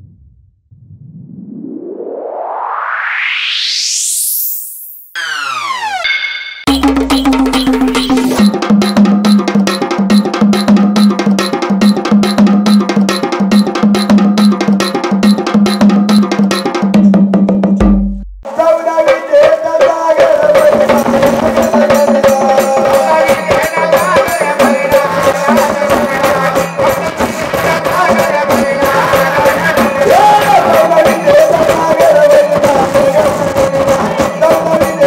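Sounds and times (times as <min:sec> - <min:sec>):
wavering melody line: 0:05.2 - 0:09.0
fast hand percussion: 0:06.6 - 0:35.0.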